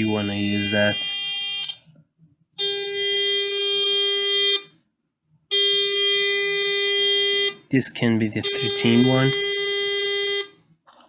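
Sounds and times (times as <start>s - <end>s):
steady buzzy alarm tone: 0.0s - 1.8s, 2.6s - 4.7s, 5.5s - 7.6s, 8.4s - 10.6s.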